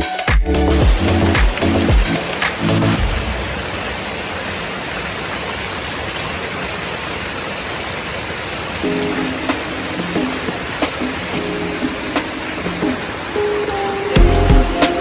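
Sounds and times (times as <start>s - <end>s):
background music: 0.0s - 3.4s, 8.8s - 15.0s
steady rushing noise: 0.6s - 15.0s.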